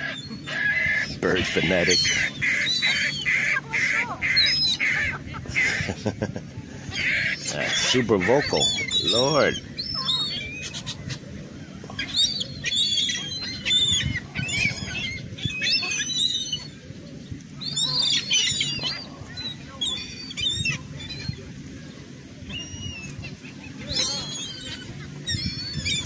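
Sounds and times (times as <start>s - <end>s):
gulls calling: 0.0s - 26.0s.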